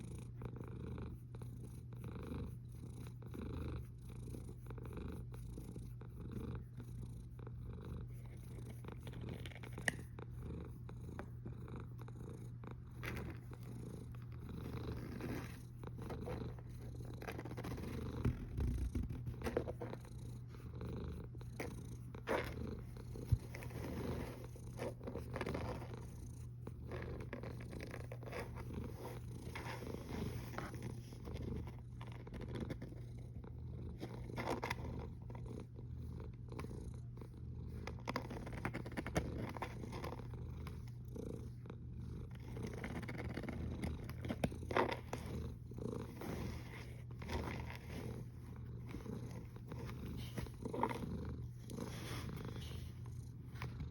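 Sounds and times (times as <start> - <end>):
cat snoring: 0.0 - 8.8, 10.1 - 31.8, 32.5 - 53.9.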